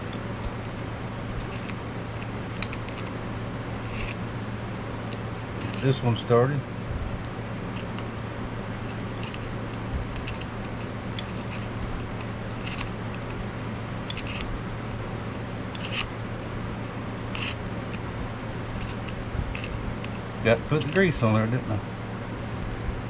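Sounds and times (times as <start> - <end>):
metallic clicks and scrapes: 0.0 - 6.3, 7.2 - 14.6, 15.7 - 21.2
steady low hum: 0.0 - 23.0.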